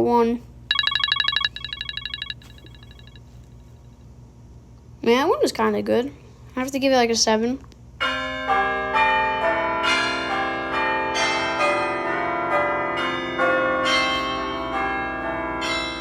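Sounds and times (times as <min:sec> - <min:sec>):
phone ringtone melody: 0:00.7 - 0:03.2.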